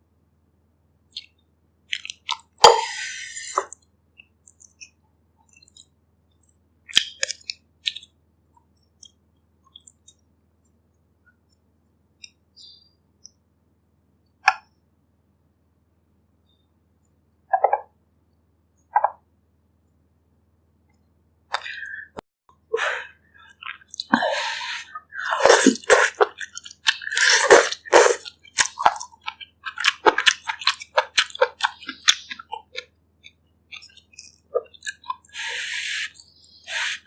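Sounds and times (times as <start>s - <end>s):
wet chewing and smacking: 1.0s - 2.6s, 3.6s - 10.2s, 25.6s - 35.4s.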